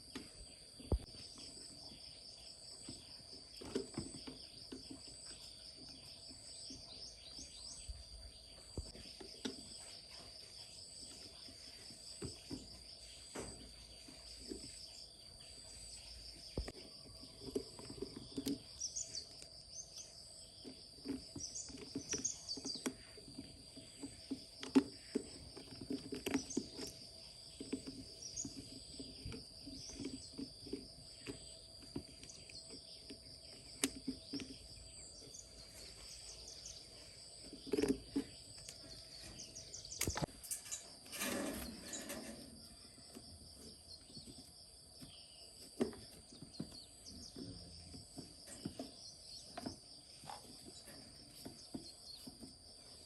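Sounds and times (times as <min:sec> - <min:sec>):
short scraping noise: 0:40.5 - 0:42.6.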